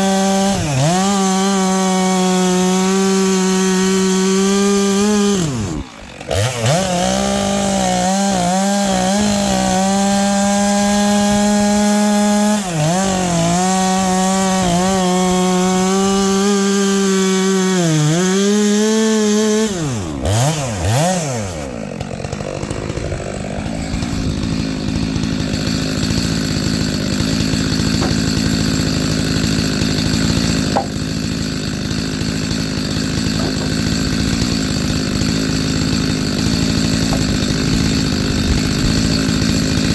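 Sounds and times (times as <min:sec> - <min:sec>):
chainsaw cutting firewood: 0:00.0 - 0:39.9.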